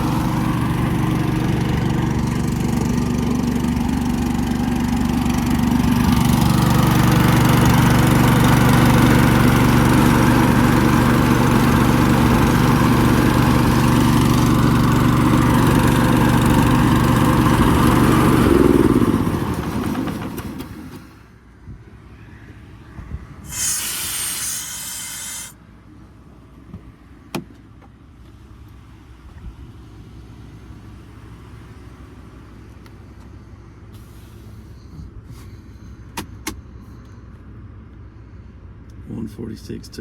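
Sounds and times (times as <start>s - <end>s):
engine running and winding down: 0.0s - 21.2s, 22.7s - 25.6s.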